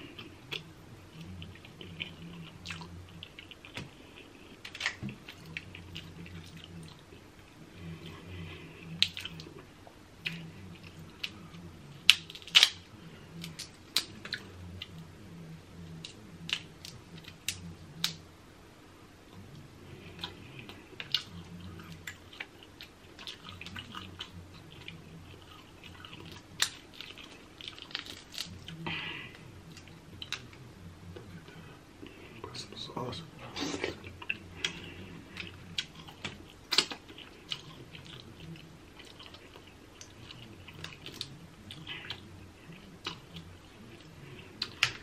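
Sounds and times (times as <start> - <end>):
wet chewing: 0.0 - 15.1, 19.3 - 32.2, 33.4 - 45.0
crab shell cracking: 12.0 - 12.8.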